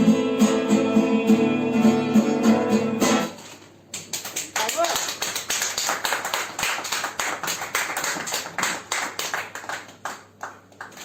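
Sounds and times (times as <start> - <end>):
audience applauding: 4.0 - 11.0.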